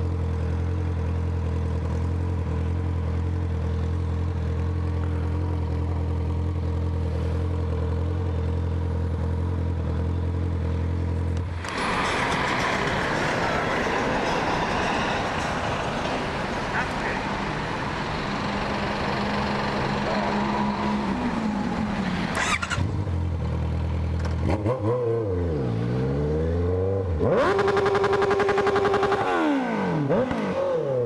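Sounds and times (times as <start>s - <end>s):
motorcycle engine idling: 0.0s - 24.4s.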